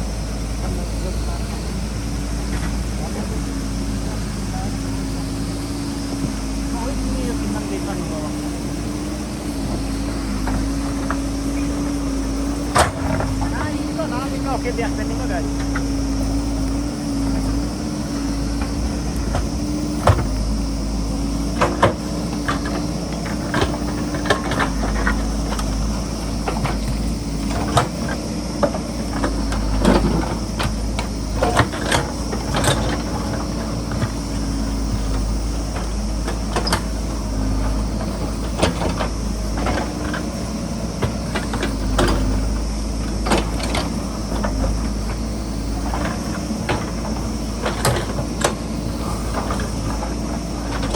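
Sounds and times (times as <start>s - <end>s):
diesel engine running under load: 0.0s - 50.9s
sharp knocks and clanks: 18.4s - 20.6s, 21.5s - 34.3s.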